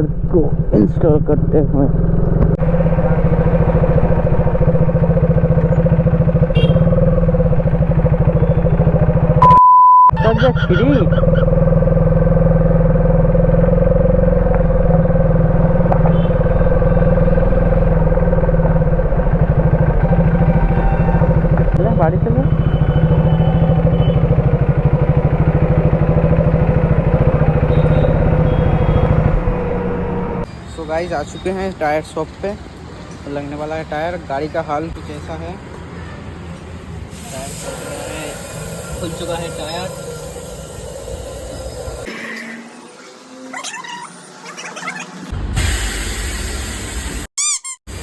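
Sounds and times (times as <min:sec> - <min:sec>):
motorcycle engine running: 0:00.0 - 0:09.4, 0:10.2 - 0:30.5, 0:37.2 - 0:42.1.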